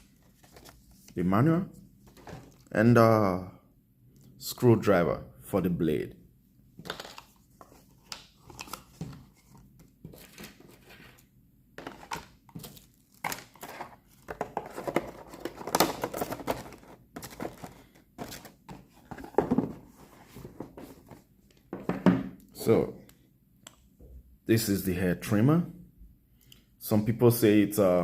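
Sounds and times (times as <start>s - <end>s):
packaging crinkling and rustling: 11.8s - 19.4s.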